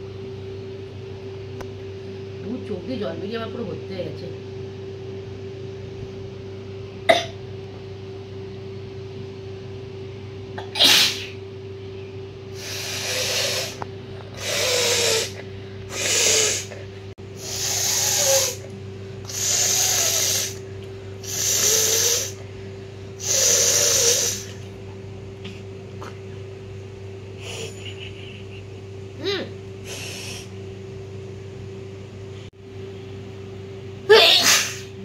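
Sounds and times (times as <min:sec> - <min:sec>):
woman sneezing: 0:10.6 - 0:11.4, 0:34.1 - 0:35.0
woman blowing her nose: 0:10.8 - 0:11.4, 0:12.6 - 0:13.8, 0:14.4 - 0:16.8, 0:17.4 - 0:18.6, 0:19.3 - 0:20.6, 0:21.2 - 0:22.4, 0:23.2 - 0:24.6, 0:34.3 - 0:34.9.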